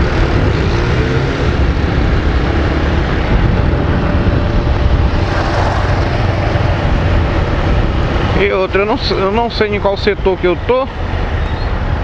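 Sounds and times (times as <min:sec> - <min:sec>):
wind rush on microphone: 0:00.0 - 0:12.0
motorcycle engine running: 0:03.1 - 0:08.4.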